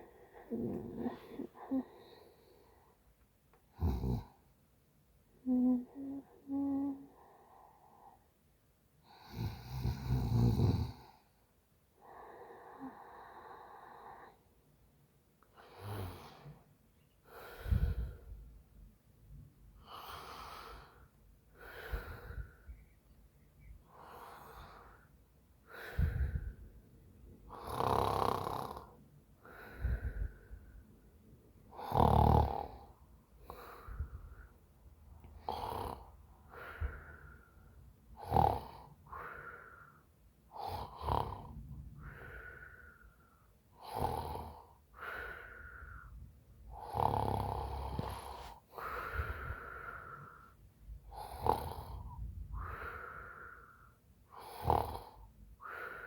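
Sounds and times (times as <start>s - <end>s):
woman snoring: 0.0s - 2.5s, 3.7s - 4.4s, 5.4s - 7.6s, 9.1s - 11.1s, 15.6s - 16.5s, 27.5s - 29.0s, 31.7s - 32.9s, 35.4s - 37.0s, 38.2s - 39.6s, 40.6s - 42.2s, 43.8s - 46.0s, 46.7s - 50.5s, 51.1s - 53.6s, 54.3s - 56.0s.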